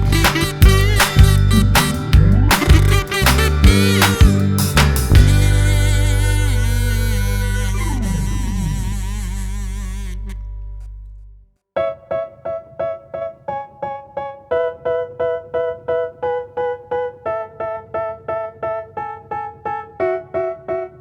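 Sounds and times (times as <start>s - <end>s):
electric piano repeated notes: 0.0s - 9.0s, 11.8s - 21.0s
low buzzy sound: 0.0s - 11.4s.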